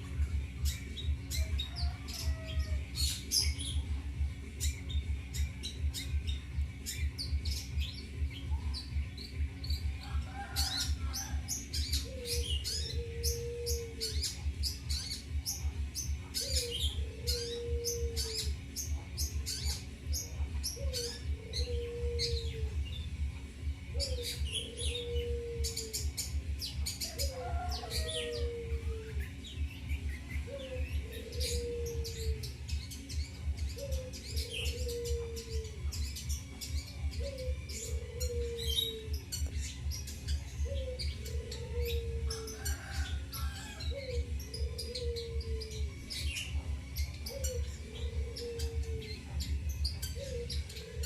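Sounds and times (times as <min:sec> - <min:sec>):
shrike chirping and chattering: 0:00.0 - 0:51.0
steady low hum: 0:00.0 - 0:51.0.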